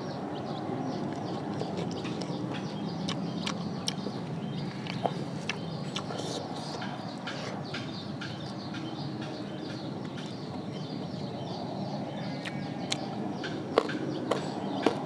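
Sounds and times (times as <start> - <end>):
person chewing and smacking: 1.1 - 4.1, 4.8 - 9.4, 12.4 - 15.0.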